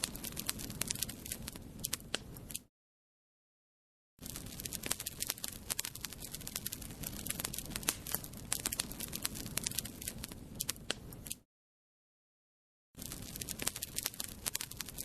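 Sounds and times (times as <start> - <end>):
fire crackling: 0.0 - 2.5, 4.2 - 11.4, 13.0 - 15.0.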